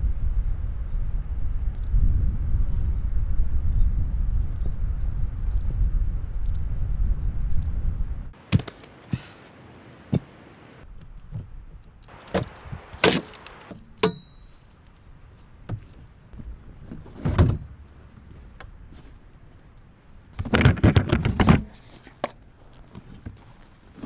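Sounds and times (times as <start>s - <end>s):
clicks and knocks of handling: 8.4s - 10.4s, 12.1s - 13.7s
brief high squeak: 12.1s - 14.5s.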